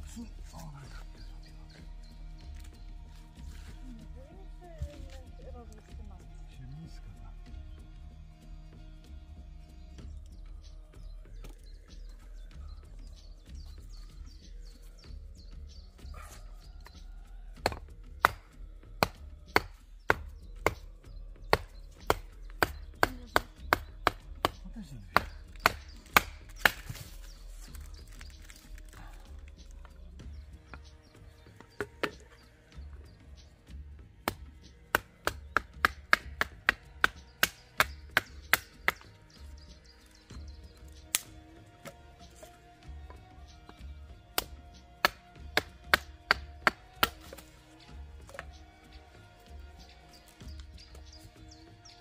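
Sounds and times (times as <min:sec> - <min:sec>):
axe chopping wood: 0:17.6 - 0:30.0, 0:30.7 - 0:32.4, 0:34.2 - 0:39.1, 0:40.8 - 0:49.5.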